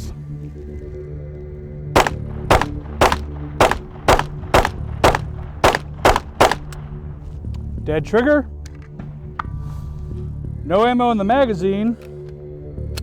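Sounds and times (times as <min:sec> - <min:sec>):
pistol shots: 0:02.0 - 0:06.9.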